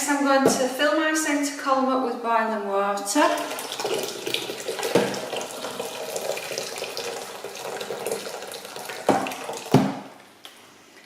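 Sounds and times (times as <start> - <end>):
water running into a sink: 3.2 - 10.2.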